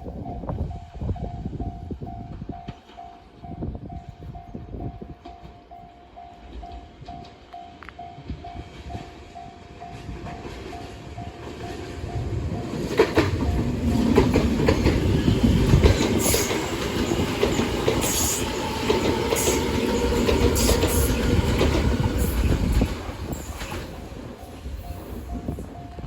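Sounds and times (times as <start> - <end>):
train wheels clattering over rail joints: 9.8 - 25.5.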